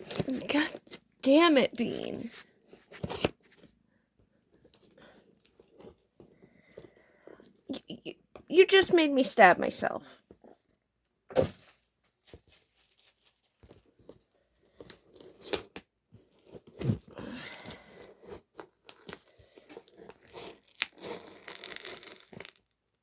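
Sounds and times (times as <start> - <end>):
packaging crinkling: 18.6 - 22.8
packaging tearing: 18.6 - 22.8.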